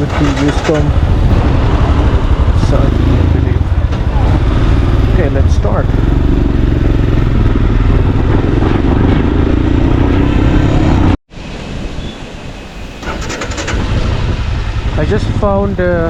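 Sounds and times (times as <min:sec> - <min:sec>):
motorcycle engine running: 0:00.0 - 0:11.2.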